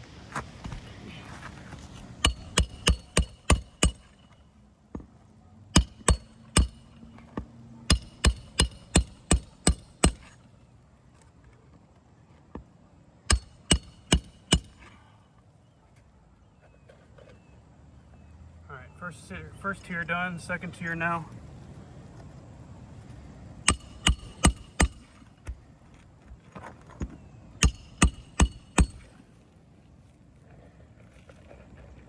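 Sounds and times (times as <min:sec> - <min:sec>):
hatchet hammering nails into shingles: 0:02.2 - 0:04.4, 0:05.7 - 0:10.4, 0:13.3 - 0:15.0, 0:23.6 - 0:25.6, 0:27.0 - 0:29.2.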